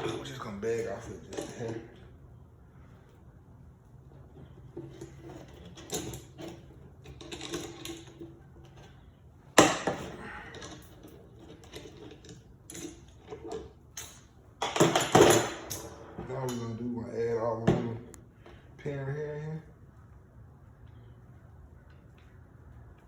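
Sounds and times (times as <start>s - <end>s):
tools clicking and rustling: 0.0s - 2.2s, 4.1s - 16.9s.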